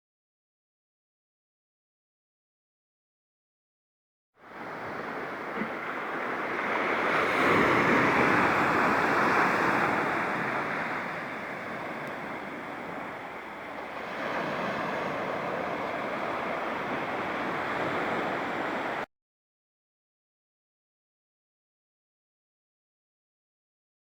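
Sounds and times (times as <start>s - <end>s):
waves washing on shore: 4.4s - 19.1s.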